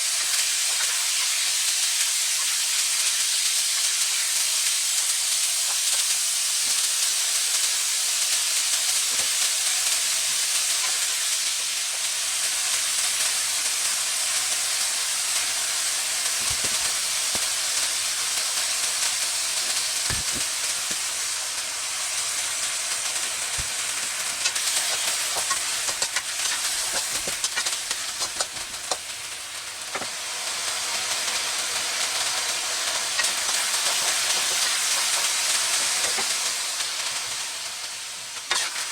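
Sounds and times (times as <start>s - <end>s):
chicken sizzling in a hot pan: 0.0s - 38.9s
utensil scraping pan: 24.4s - 29.0s, 38.5s - 38.9s.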